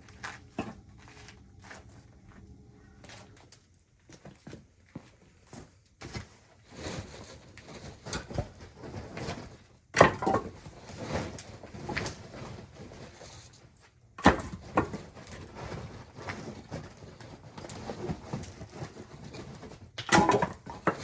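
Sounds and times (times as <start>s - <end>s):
firewood logs knocking: 20.0s - 21.0s.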